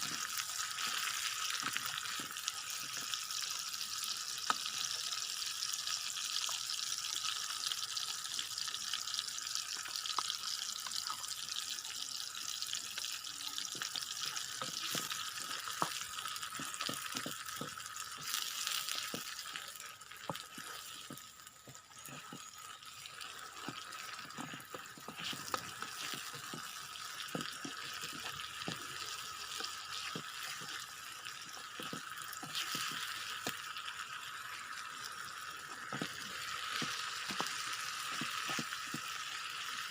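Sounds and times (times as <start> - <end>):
rice sizzling in a pan: 0.0 - 39.9
spatula scraping and tapping: 14.6 - 22.7, 23.3 - 30.8.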